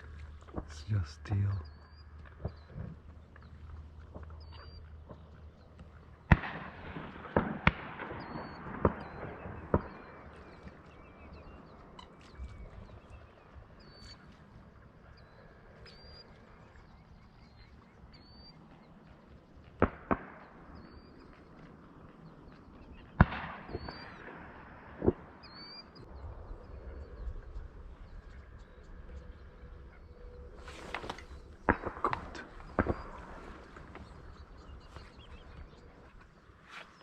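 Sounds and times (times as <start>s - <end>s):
faint high bird calls: 0.0s - 6.4s, 8.0s - 24.4s, 25.0s - 37.0s
shotgun shots echoing: 6.2s - 11.1s, 19.8s - 21.1s, 23.2s - 25.8s, 30.7s - 35.7s.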